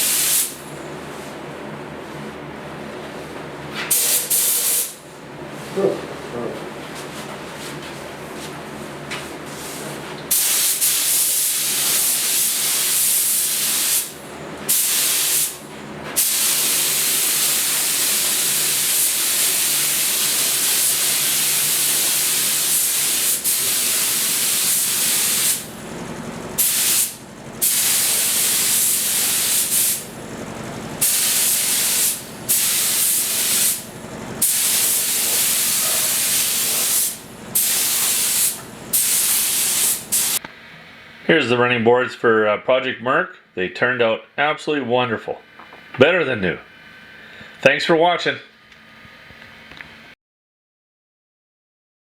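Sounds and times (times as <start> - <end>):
air spray gun hissing: 0.0 - 0.6, 3.9 - 5.0, 10.3 - 14.1, 14.7 - 15.6, 16.2 - 25.7, 26.6 - 30.1, 31.0 - 40.4.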